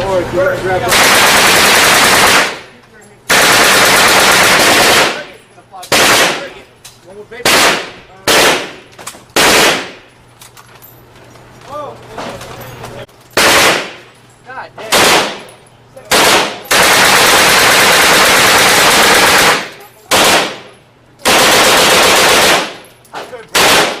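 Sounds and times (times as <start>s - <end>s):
automatic gunfire bursts with echo: 0.9s - 2.7s, 3.3s - 5.3s, 5.9s - 6.5s, 7.4s - 8.8s, 9.4s - 10.0s, 13.4s - 14.0s, 14.9s - 15.4s, 16.1s - 22.8s, 23.5s - 24.0s.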